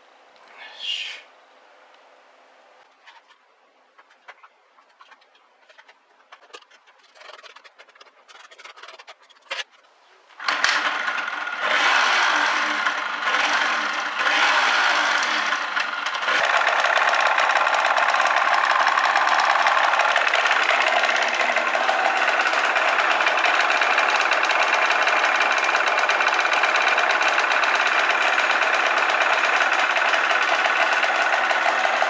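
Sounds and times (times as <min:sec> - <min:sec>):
motorcycle engine revving: 0:10.4 - 0:32.0.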